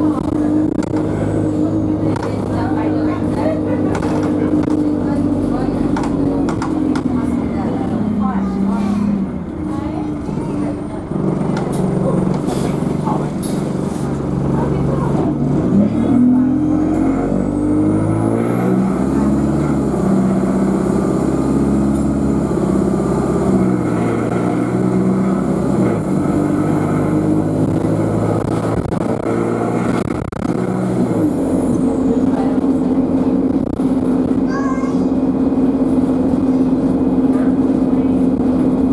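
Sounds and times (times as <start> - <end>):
bus engine under power: 0.0 - 38.9
turbocharger whine: 16.4 - 34.4.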